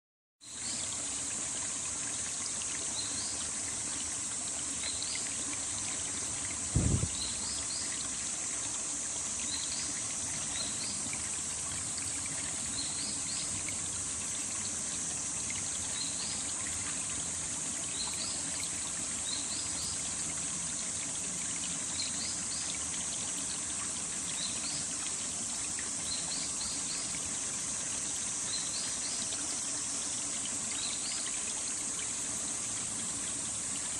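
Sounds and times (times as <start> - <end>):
stream flowing: 0.4 - 33.9
low thump: 6.7 - 7.2.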